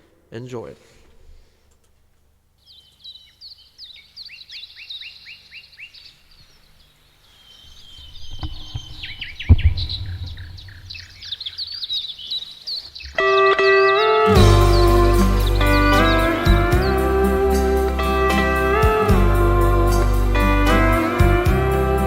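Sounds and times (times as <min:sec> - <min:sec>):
songbirds chirping: 0:01.7 - 0:22.0
low rumble: 0:08.0 - 0:11.3
thumps: 0:08.2 - 0:11.2.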